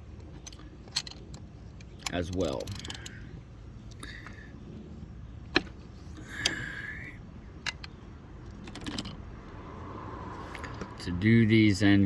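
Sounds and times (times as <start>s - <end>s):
hand tools clicking on metal: 0.2s - 3.2s.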